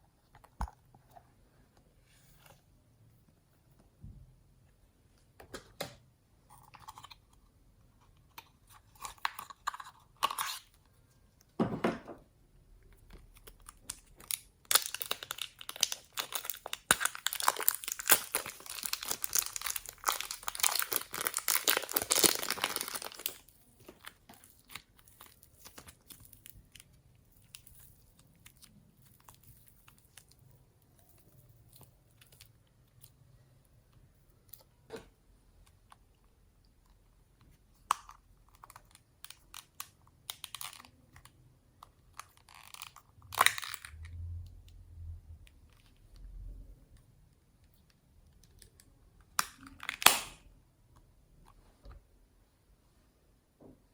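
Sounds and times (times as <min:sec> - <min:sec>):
slime crackling and popping: 0:13.4 - 0:30.3, 0:49.3 - 0:50.4.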